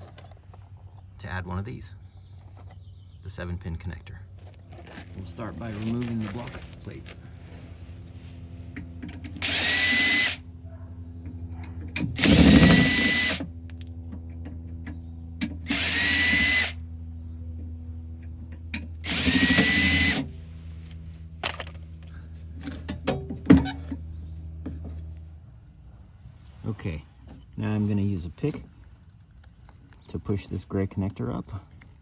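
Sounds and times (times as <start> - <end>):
cordless drill whining: 9.3 - 10.4, 12.0 - 13.5, 15.6 - 16.8, 19.0 - 20.3.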